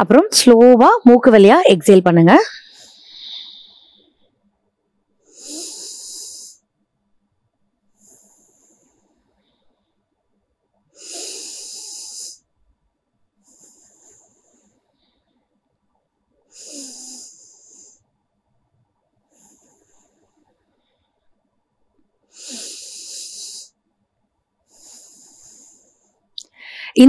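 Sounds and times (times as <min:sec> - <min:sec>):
woman breathing through nose: 0:02.6 - 0:04.2, 0:05.3 - 0:06.6, 0:07.9 - 0:10.1, 0:11.0 - 0:12.5, 0:13.4 - 0:15.3, 0:16.5 - 0:18.1, 0:19.2 - 0:21.2, 0:22.3 - 0:23.8, 0:24.6 - 0:27.0.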